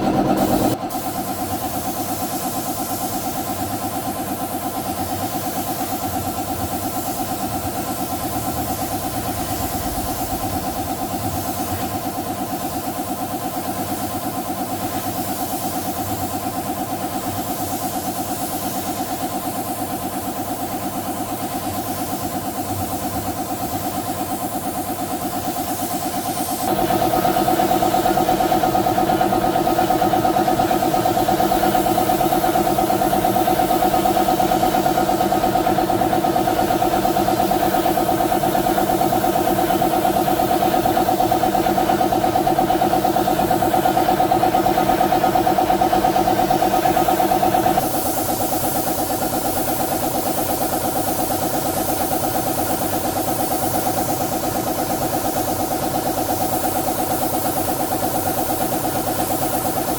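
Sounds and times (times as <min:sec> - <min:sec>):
machine motor droning: 0:07.5 - 0:12.3, 0:26.4 - 0:47.8.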